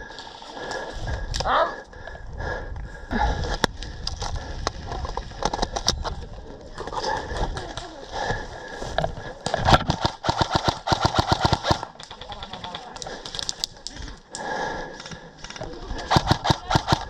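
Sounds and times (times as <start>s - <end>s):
airsoft guns firing full-auto: 9.7s - 13.4s, 16.1s - 17.0s.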